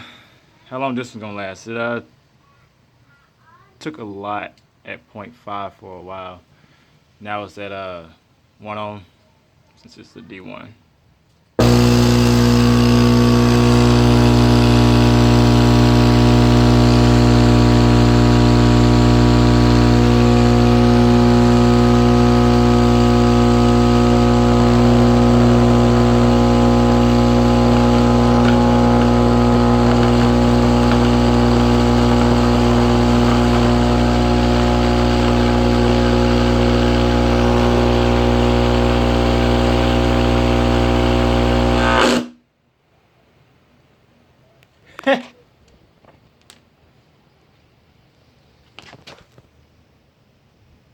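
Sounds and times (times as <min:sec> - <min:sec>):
loud buzzing mains hum: 0:11.6 - 0:42.4.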